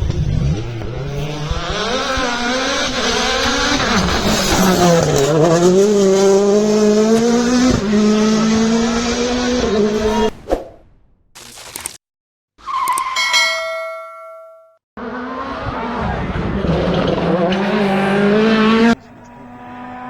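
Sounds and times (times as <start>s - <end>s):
rally car engine revving: 0.0s - 10.3s, 15.0s - 20.0s.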